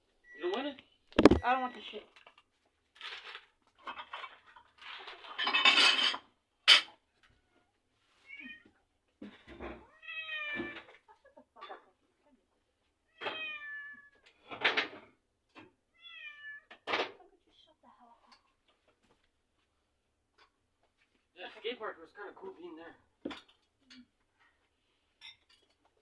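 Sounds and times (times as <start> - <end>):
cat meowing: 8.2 - 8.8, 9.8 - 11.0, 13.1 - 14.2, 15.9 - 16.8.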